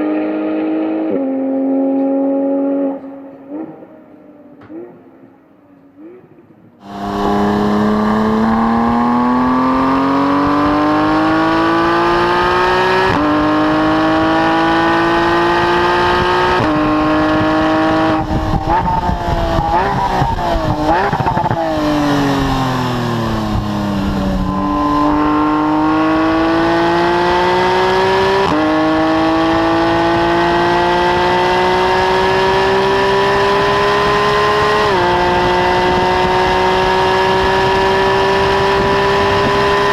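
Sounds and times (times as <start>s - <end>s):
sports car engine revving: 6.0s - 39.9s.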